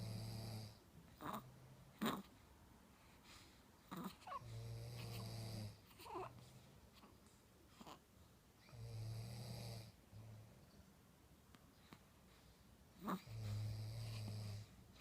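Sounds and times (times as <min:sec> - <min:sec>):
buzzing snores: 0:00.0 - 0:01.4, 0:03.9 - 0:06.3, 0:08.7 - 0:10.0, 0:13.0 - 0:14.8.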